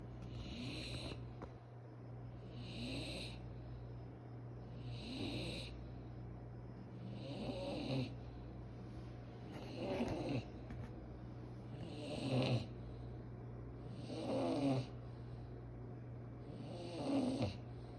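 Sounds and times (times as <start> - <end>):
person snoring: 11.8 - 12.7, 16.5 - 17.6.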